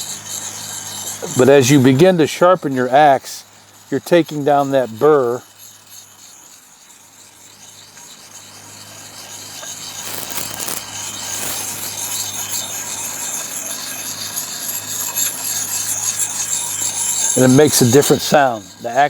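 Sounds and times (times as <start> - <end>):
sharpening puck rasping on axe: 0.0 - 19.0.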